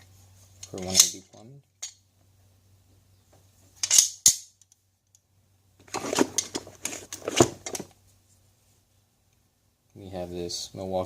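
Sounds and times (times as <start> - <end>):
metal hand tools clattering: 0.6 - 1.9.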